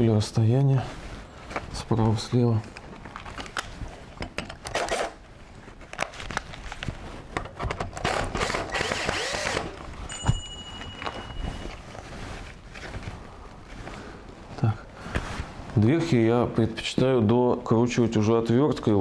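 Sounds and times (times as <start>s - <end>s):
cordless drill driving a screw: 8.0s - 9.8s.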